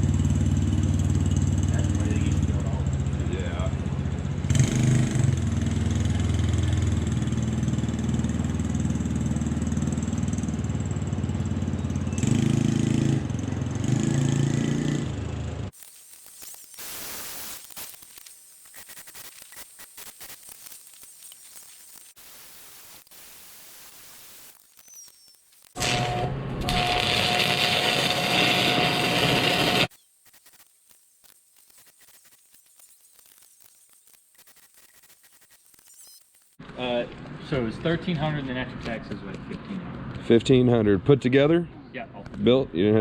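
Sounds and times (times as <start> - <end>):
small gasoline engine running: 0.0 - 15.7, 25.8 - 29.9
irregular crackling clicks: 15.8 - 22.2, 24.4 - 25.8, 29.9 - 36.6.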